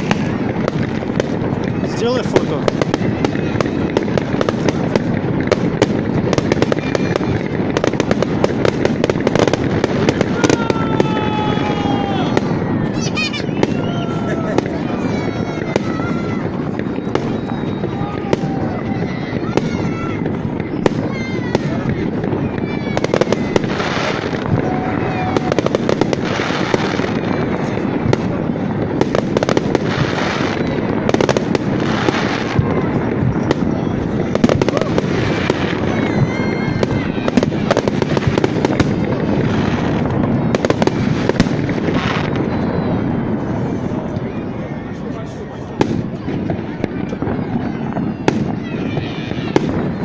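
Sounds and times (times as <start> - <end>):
dense rumble: 0.0 - 50.0
fireworks bangs and crackles: 0.0 - 50.0.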